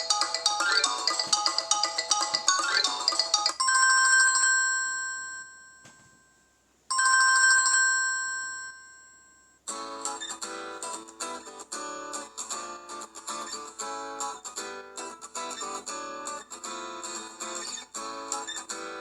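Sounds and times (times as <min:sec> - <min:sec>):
mallet-like ringtone melody: 0:00.0 - 0:05.9
strummed guitar ringtone: 0:00.0 - 0:06.2, 0:06.9 - 0:19.0
telephone-style ringtone: 0:00.0 - 0:09.6.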